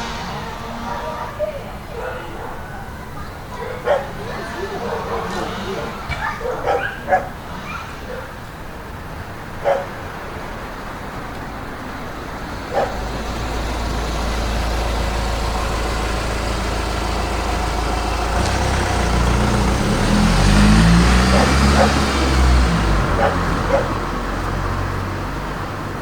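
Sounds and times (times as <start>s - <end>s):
passing vehicle engine rumble: 0.0s - 26.0s
dog barking: 0.8s - 8.5s, 9.6s - 10.2s, 12.7s - 13.2s, 21.1s - 24.2s.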